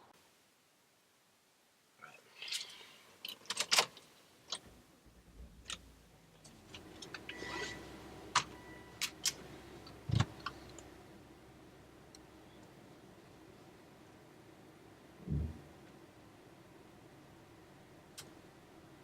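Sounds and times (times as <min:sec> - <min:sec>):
dull deep thump: 0:15.2 - 0:15.7.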